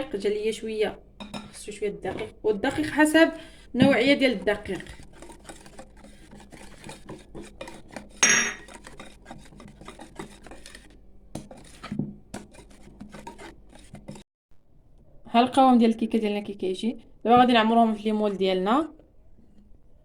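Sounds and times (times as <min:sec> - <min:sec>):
utensil scraping a bowl: 0:00.0 - 0:14.2
ringing clink: 0:08.2 - 0:08.6.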